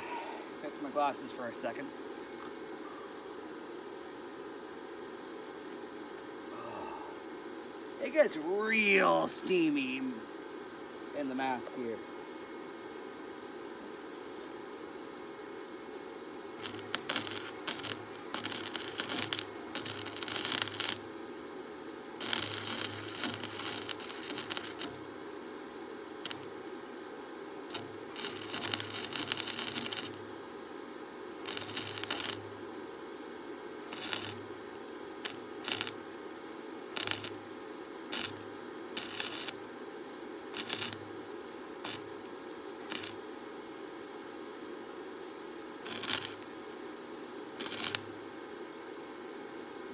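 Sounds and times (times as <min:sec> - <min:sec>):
steady background hum: 0:00.0 - 0:49.9
welding arc crackling: 0:16.4 - 0:25.5, 0:26.2 - 0:26.6, 0:27.7 - 0:30.6, 0:31.4 - 0:32.8, 0:33.9 - 0:36.1, 0:36.9 - 0:39.8, 0:40.5 - 0:43.2, 0:45.8 - 0:46.6, 0:47.6 - 0:48.2.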